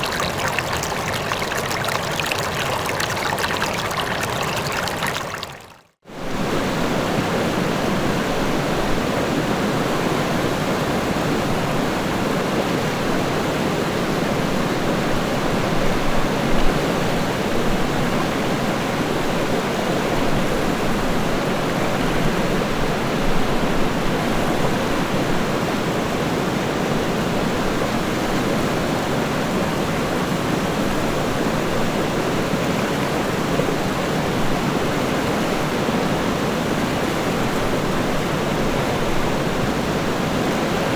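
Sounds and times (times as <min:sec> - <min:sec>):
river water rushing: 0:00.0 - 0:05.8.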